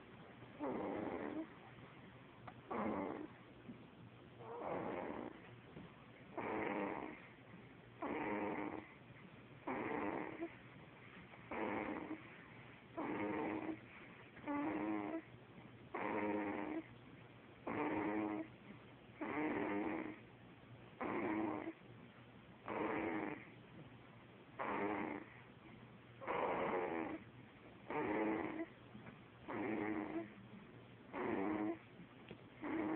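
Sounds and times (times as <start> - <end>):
quiet breaths: 0.0 - 32.9
buzzing snores: 0.6 - 1.6, 2.7 - 3.4, 4.4 - 5.5, 6.3 - 7.3, 8.0 - 9.0, 9.6 - 10.6, 11.5 - 12.3, 13.0 - 13.8, 14.4 - 15.3, 15.9 - 16.9, 17.6 - 18.6, 19.2 - 20.2, 21.0 - 21.8, 22.6 - 23.6, 24.6 - 25.4, 26.2 - 28.7, 29.4 - 30.4, 31.1 - 31.9, 32.6 - 32.9.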